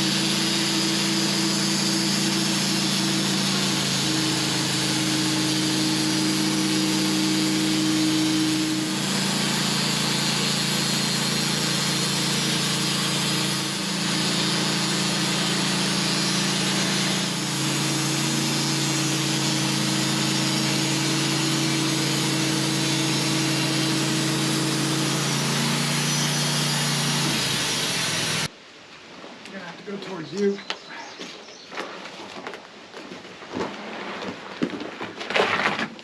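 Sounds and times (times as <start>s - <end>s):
engine drone: 0.0s - 28.5s
saw blade whining in wood: 0.0s - 28.5s.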